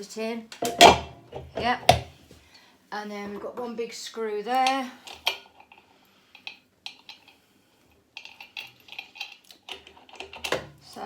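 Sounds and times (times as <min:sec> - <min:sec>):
screw turned by hand: 0:08.2 - 0:10.6.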